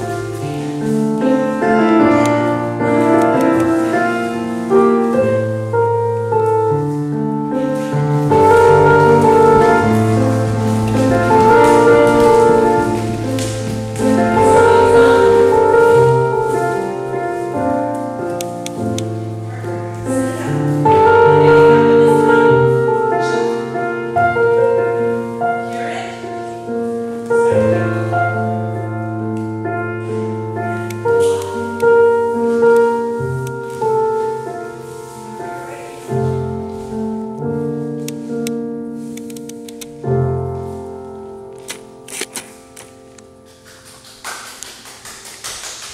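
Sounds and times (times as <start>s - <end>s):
piano music: 0.0s - 45.9s.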